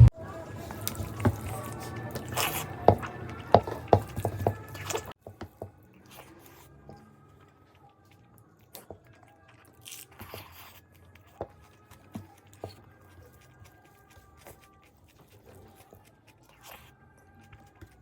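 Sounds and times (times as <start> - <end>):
wet chewing and mouth clicks: 0.0 - 18.0.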